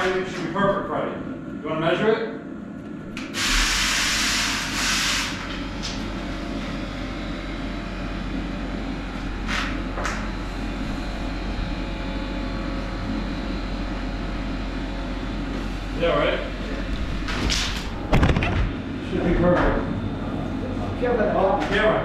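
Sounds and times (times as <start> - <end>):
machine drone with low hum: 0.0 - 22.0
loud hissing burst: 3.3 - 5.4.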